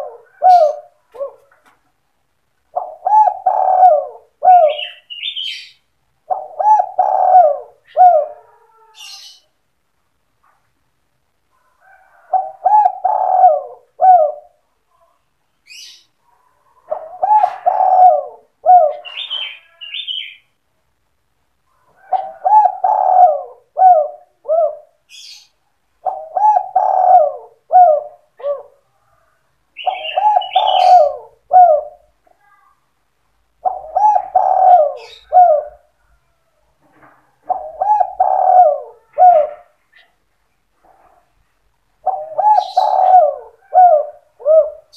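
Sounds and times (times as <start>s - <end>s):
dove cooing loudly: 0.0s - 1.5s, 2.7s - 9.4s, 12.0s - 14.6s, 16.9s - 20.4s, 22.0s - 25.4s, 26.0s - 28.8s, 29.8s - 32.1s, 33.6s - 36.0s, 37.5s - 39.8s, 42.0s - 44.9s.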